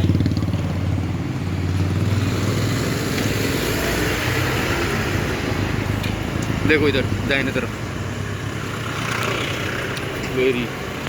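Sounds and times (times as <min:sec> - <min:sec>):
road noise rushing: 0:00.0 - 0:11.0
vehicle engine pulsing hum: 0:00.0 - 0:11.0.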